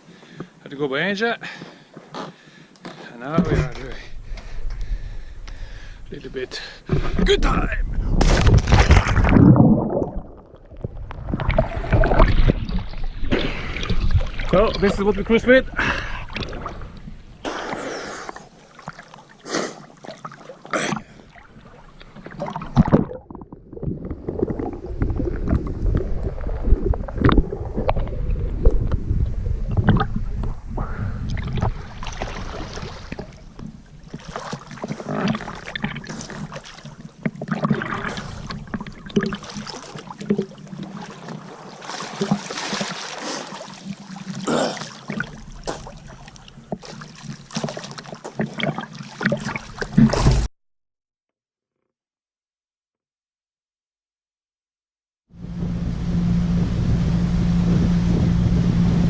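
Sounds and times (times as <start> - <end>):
water rushing along hulls: 3.2 - 50.5, 55.4 - 59.0
wind on microphone: 23.9 - 33.4, 55.4 - 59.0.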